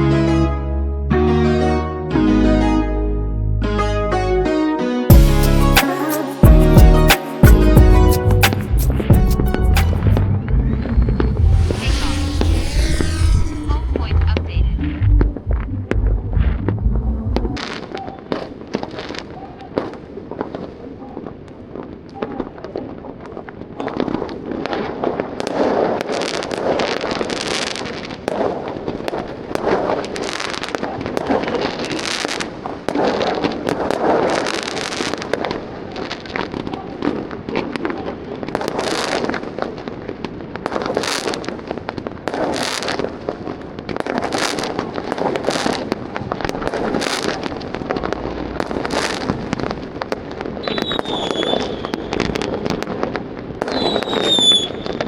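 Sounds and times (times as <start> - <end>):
fireworks and firecrackers banging: 17.6 - 55.0
high firework whistle: 50.6 - 52.4, 53.6 - 55.0.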